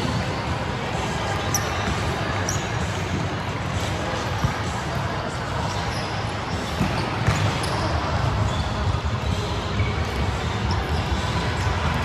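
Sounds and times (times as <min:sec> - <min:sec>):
gym hall din: 0:00.0 - 0:12.0
shoe squeaks: 0:01.4 - 0:03.0, 0:05.7 - 0:08.8.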